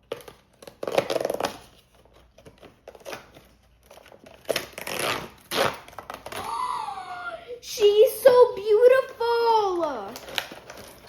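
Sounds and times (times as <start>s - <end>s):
packaging crinkling: 9.3s - 11.0s.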